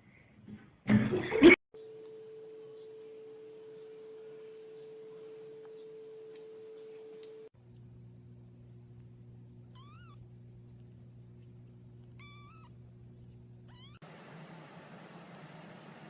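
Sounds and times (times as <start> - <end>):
steady low hum: 1.8 - 16.0
cat meowing: 9.7 - 10.2, 12.2 - 12.8, 13.7 - 14.0.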